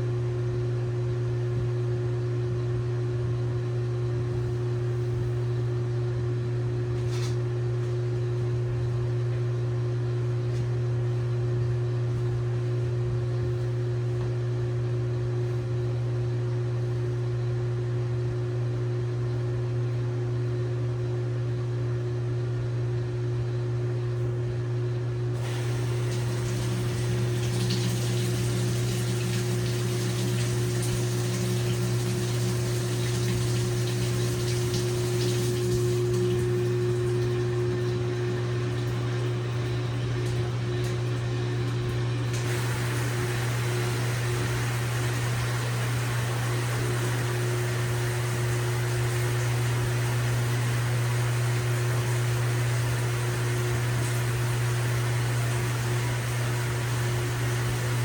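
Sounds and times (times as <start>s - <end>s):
washing machine humming: 0.0s - 58.0s
rushing water: 25.4s - 41.0s, 42.2s - 58.0s.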